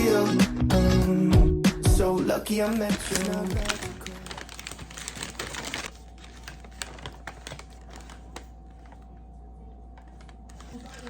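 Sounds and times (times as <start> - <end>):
steady low hum: 5.8 - 11.0.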